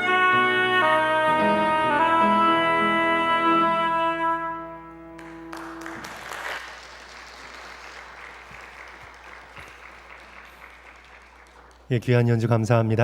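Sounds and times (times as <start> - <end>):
congregation applauding: 5.1 - 12.2.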